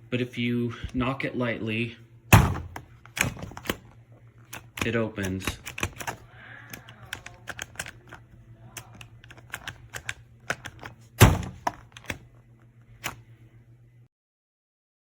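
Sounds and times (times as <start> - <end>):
loud thunk: 2.3 - 3.5, 11.2 - 11.8
plastic lock clicks and taps: 2.4 - 3.8, 4.5 - 8.2, 8.8 - 12.2.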